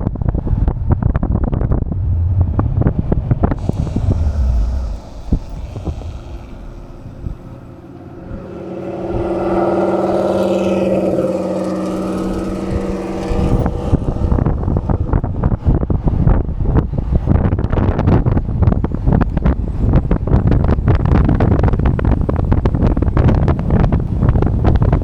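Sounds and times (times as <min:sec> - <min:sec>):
electric motorbike hum: 0:00.0 - 0:25.0
wind buffeting microphone: 0:00.0 - 0:25.0.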